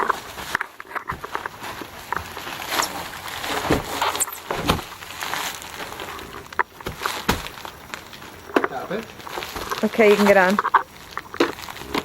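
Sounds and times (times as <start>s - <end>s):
dull thumps: 2.1s - 5.0s, 6.6s - 7.6s.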